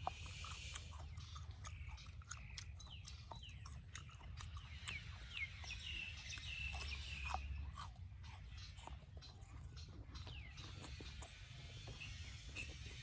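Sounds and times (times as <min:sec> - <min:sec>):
steady high-pitched whine: 0:04.7 - 0:13.0.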